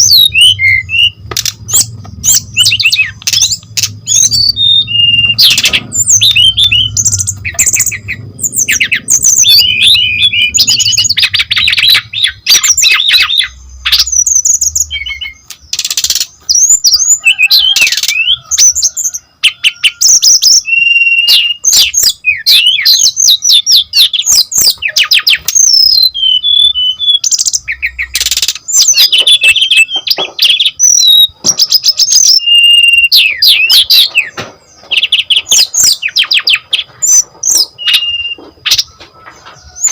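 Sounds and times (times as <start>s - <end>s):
bird singing chirps and trills: 0.0s - 39.9s.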